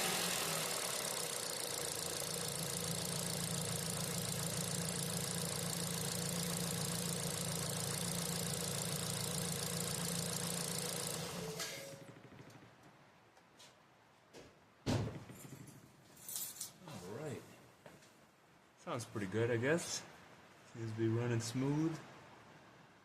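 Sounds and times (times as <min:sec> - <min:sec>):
car engine idling: 0:00.0 - 0:12.9.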